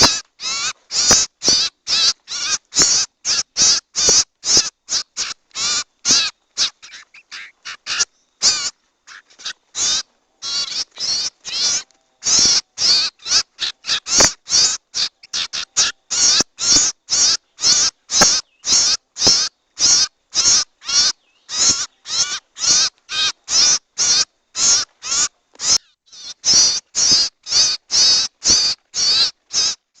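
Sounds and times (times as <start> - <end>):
harsh raspy bird calls: 0.0 - 30.0.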